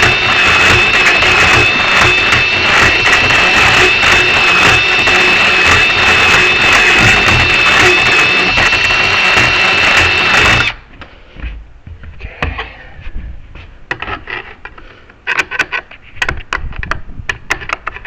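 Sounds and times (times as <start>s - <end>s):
power tool motor whining: 0.0s - 10.8s
tool handling clicks and scrapes: 13.9s - 18.0s.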